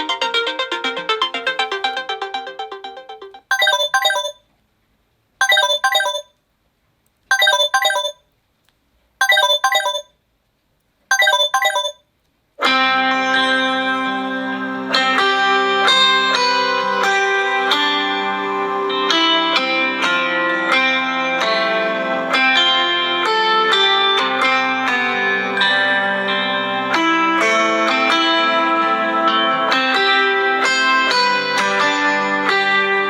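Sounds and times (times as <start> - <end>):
ringtone melody: 0.0 - 4.4, 5.4 - 6.3, 7.3 - 8.2, 9.2 - 10.1, 11.1 - 12.0
sustained music ringtone: 0.0 - 4.4, 5.4 - 6.3, 7.3 - 8.2, 9.2 - 10.1, 11.1 - 12.0
short high ringtone phrase: 1.6 - 4.4, 5.4 - 6.3, 7.3 - 8.2, 9.2 - 10.1, 11.1 - 12.0.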